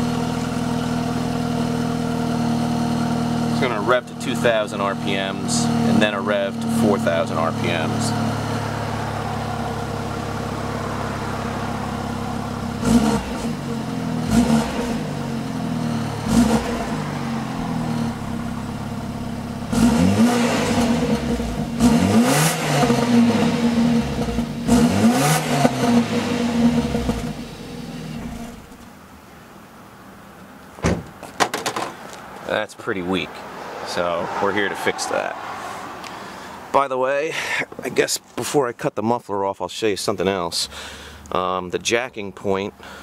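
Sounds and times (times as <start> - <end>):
car engine revving: 0.0 - 28.8, 32.1 - 36.9
car engine idling: 0.0 - 37.9.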